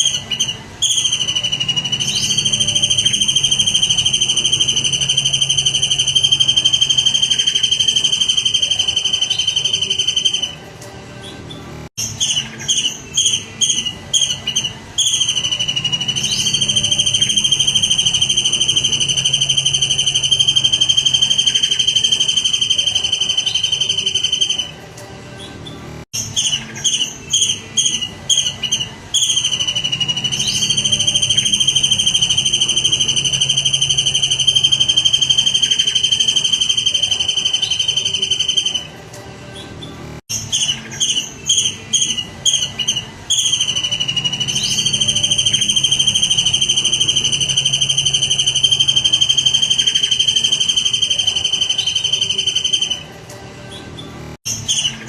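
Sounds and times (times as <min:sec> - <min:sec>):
songbird chirps and trill: 0:00.0 - 0:55.0.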